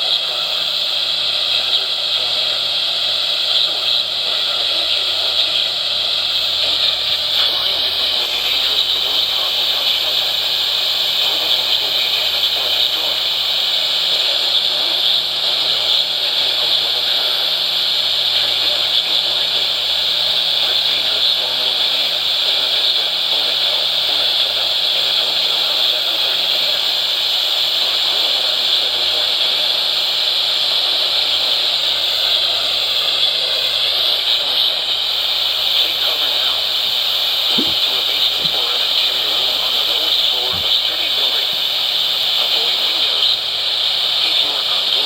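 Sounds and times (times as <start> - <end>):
radio static hiss: 0.0 - 45.0.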